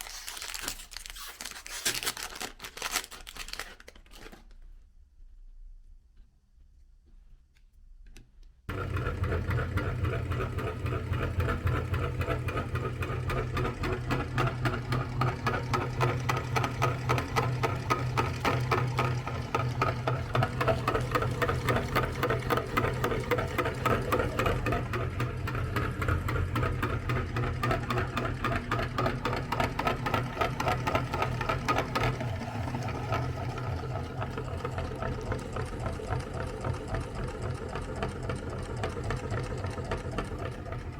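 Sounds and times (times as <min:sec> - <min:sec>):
electric meat grinder running: 0:08.7 - 0:40.9.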